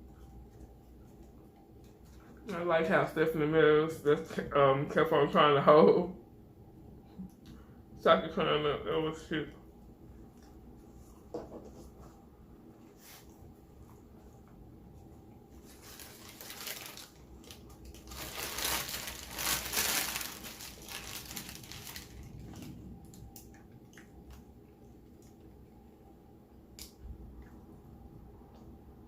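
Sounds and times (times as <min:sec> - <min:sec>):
paper packaging crinkling: 0:15.5 - 0:22.8.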